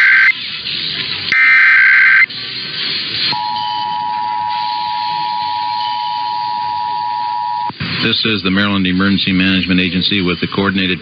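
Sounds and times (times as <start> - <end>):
digital data tones burst: 0.0 - 0.3, 1.3 - 2.3
two-tone attention signal: 0.0 - 0.3, 1.3 - 2.3, 3.4 - 7.7.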